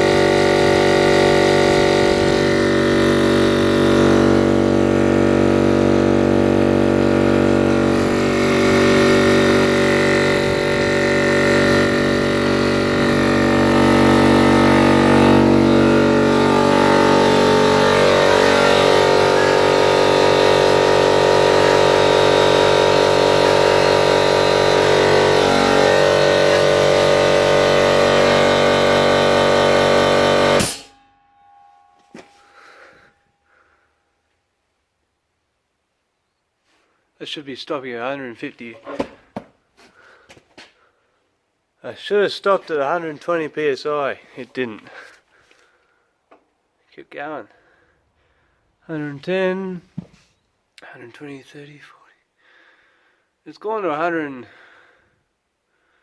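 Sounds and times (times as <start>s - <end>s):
air compressor running: 0.0s - 31.0s, 32.2s - 33.8s, 38.8s - 40.3s.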